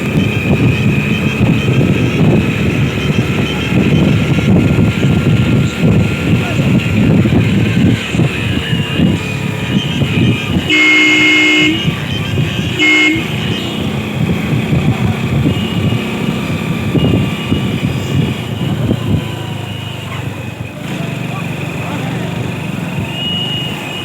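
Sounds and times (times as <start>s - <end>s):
motorcycle horn honking: 0.0s - 5.6s, 8.4s - 20.4s
wind and road noise: 0.0s - 24.0s.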